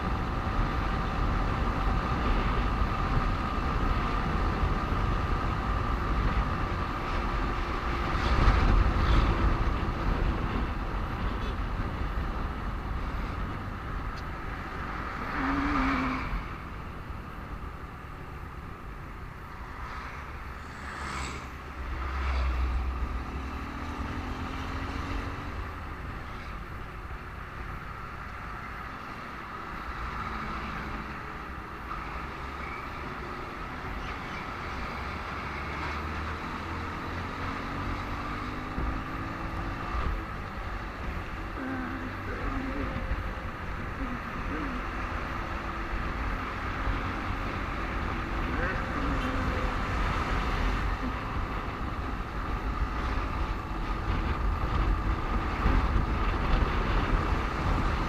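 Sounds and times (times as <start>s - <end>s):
motorcycle engine and tyre noise: 0.0s - 58.0s
vehicles passing: 0.0s - 58.0s.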